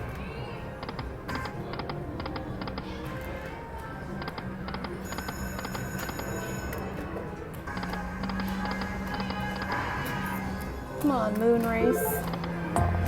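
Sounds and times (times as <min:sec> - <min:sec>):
slot machine clicking ticks: 0:11.0 - 0:12.6.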